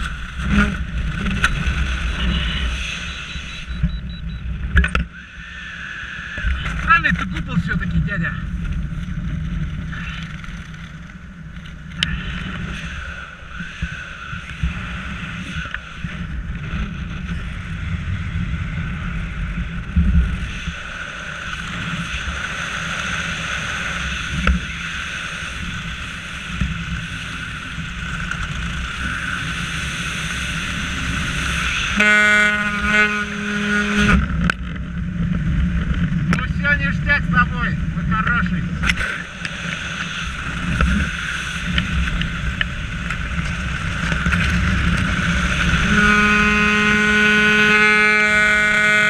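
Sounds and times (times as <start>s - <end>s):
engine running: 0.0s - 49.0s
horn sounding steady note: 31.7s - 34.2s, 45.6s - 49.0s.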